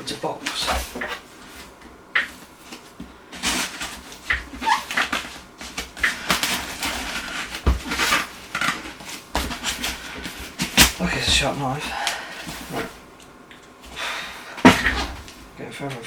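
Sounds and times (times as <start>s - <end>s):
cardboard tearing: 3.4s - 13.1s.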